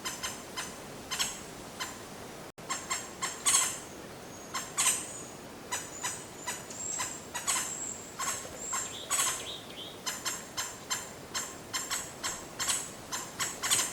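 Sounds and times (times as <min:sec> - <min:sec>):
small birds chirping: 0:02.7 - 0:12.0.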